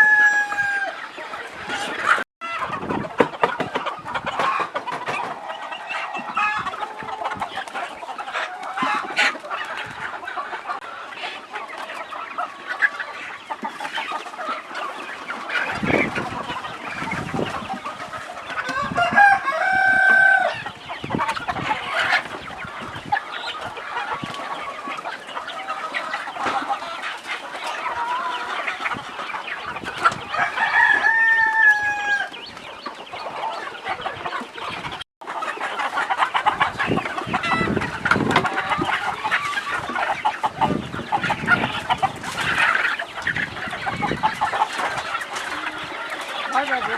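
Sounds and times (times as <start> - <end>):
rooster crowing: 0.0 - 1.0, 18.7 - 20.7, 30.3 - 32.4
chickens clucking: 0.0 - 46.9.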